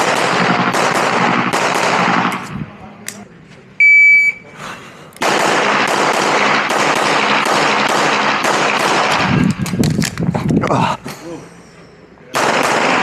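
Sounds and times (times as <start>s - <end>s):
pistol shots in rapid succession: 0.0s - 2.4s, 5.2s - 9.6s, 12.3s - 13.0s.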